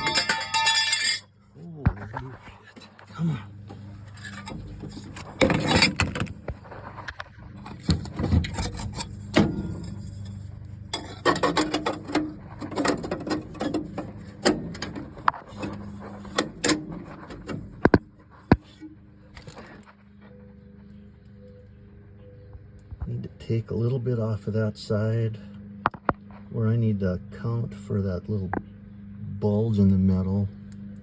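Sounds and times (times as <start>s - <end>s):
metal bracket knocking and scraping: 0.0s - 1.3s, 3.6s - 19.6s
steady low hum: 0.0s - 31.0s.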